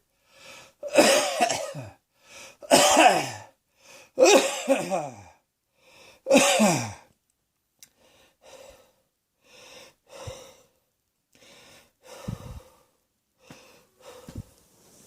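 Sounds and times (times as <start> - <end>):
person breathing heavily: 0.1 - 0.9, 2.1 - 2.7, 3.7 - 4.2, 5.7 - 6.3, 8.0 - 14.6.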